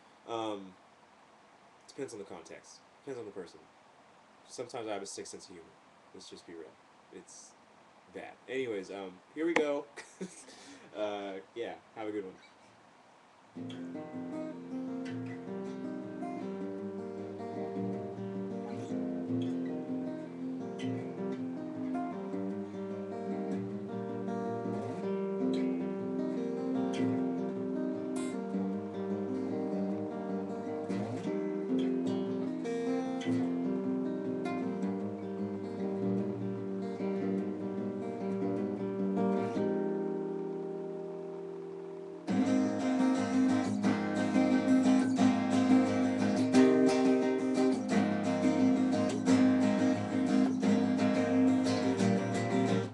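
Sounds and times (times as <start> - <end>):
solo guitar playing: 13.6 - 52.9.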